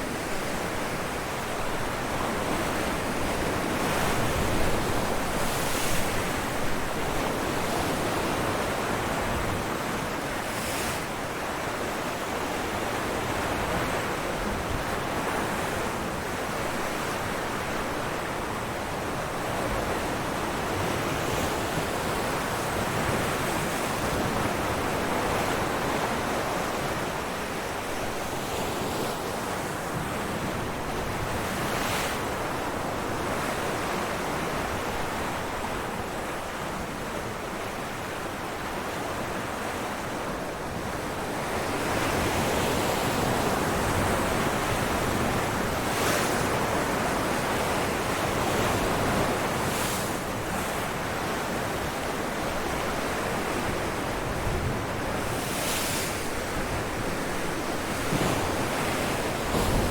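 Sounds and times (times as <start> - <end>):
ocean waves breaking on rocks: 41.4 - 59.9.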